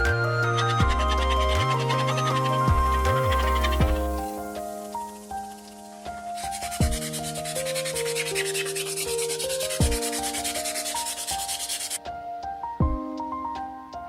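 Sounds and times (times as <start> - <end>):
slow melodic background music: 0.0 - 14.0
sanding rasp: 6.2 - 12.0.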